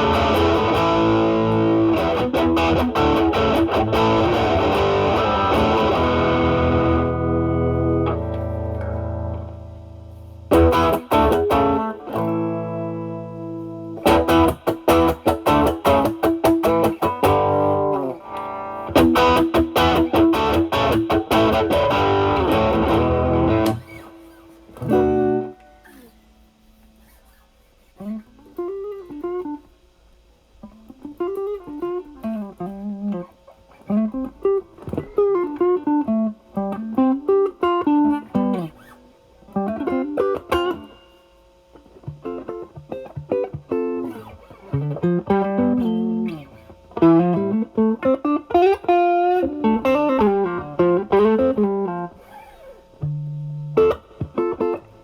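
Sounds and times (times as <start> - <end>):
overdriven electric guitar: 0.0 - 27.0, 30.5 - 55.0.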